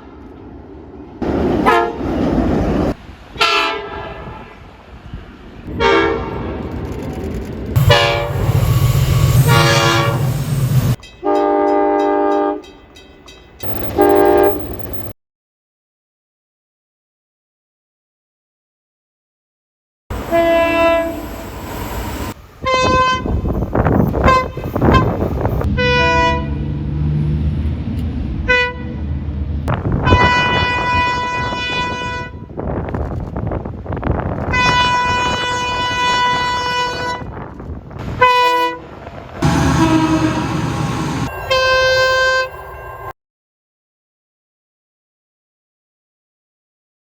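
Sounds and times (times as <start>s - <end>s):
trains rumbling past: 0.0s - 15.1s, 20.1s - 32.9s, 35.2s - 43.1s
train horns: 1.6s - 2.2s, 3.4s - 4.7s, 5.7s - 6.5s, 7.8s - 12.8s, 13.6s - 14.8s, 20.1s - 21.5s, 22.6s - 26.8s, 28.4s - 29.1s, 29.9s - 32.6s, 34.4s - 37.4s, 38.0s - 42.6s.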